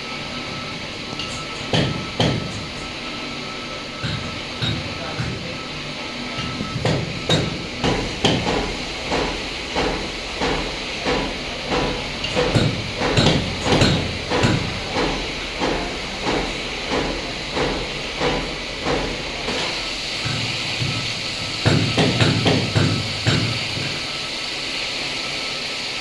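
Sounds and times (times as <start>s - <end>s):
mechanical hiss: 0.8s - 26.0s
cord machines clacking: 3.9s - 24.1s.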